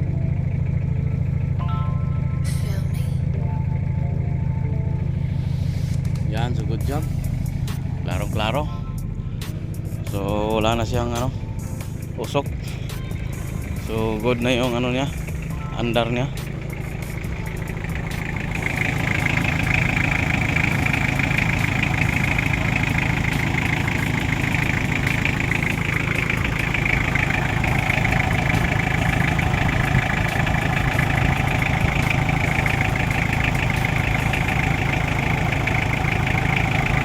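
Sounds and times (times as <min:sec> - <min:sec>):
diesel engine idling: 0:00.0 - 0:37.0.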